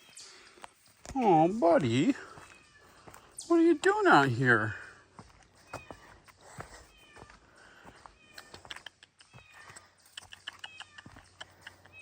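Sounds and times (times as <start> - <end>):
small cat meowing: 7.0 - 7.3, 8.2 - 9.6, 10.6 - 11.2.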